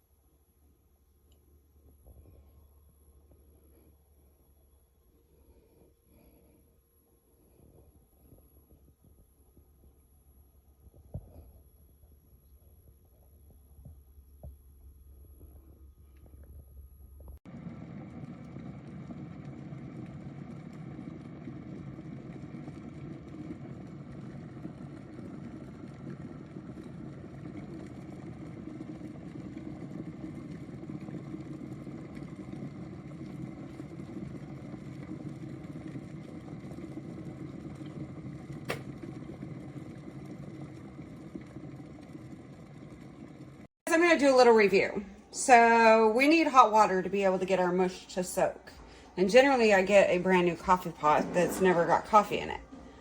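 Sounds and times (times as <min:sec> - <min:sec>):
kettle water rumbling hiss: 0:00.0 - 0:53.0.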